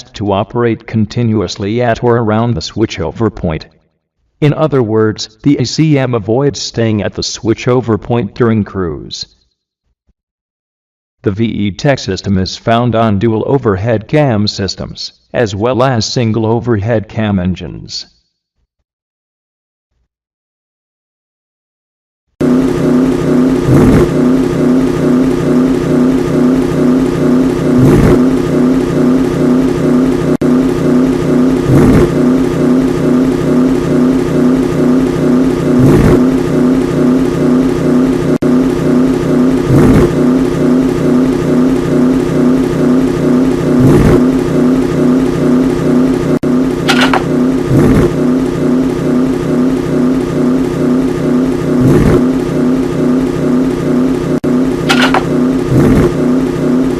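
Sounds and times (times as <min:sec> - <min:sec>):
car engine running: 0:22.4 - 0:56.9
short rising tone: 0:22.4 - 0:56.9.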